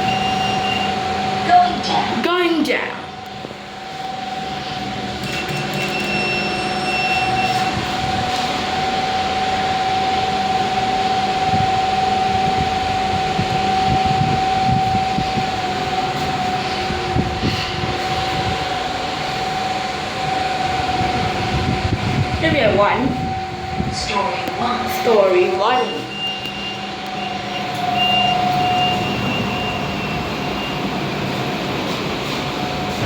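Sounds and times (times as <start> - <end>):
lift car travelling down shaft: 0.0 - 33.0.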